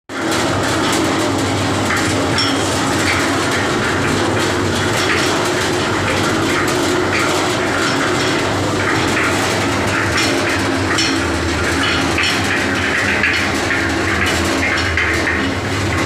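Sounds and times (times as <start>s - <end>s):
concrete mixer running: 0.1s - 16.0s
mixer drum clatter: 0.1s - 16.0s.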